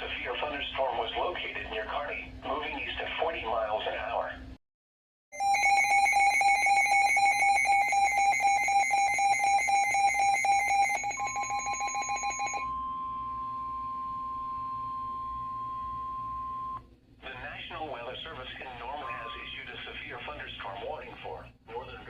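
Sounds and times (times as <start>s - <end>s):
shrill rapid alarm beeping: 5.4s - 16.8s
steady single-pitch alarm tone: 5.4s - 16.8s.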